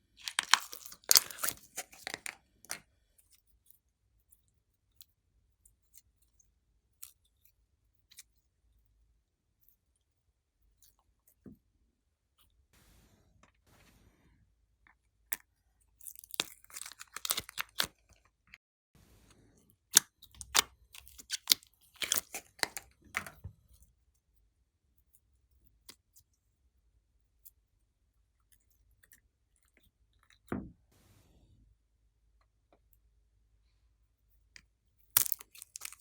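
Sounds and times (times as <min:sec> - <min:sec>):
slime clicking and crackling: 0:00.2 - 0:02.8, 0:16.0 - 0:18.0, 0:20.0 - 0:23.3, 0:35.1 - 0:36.0.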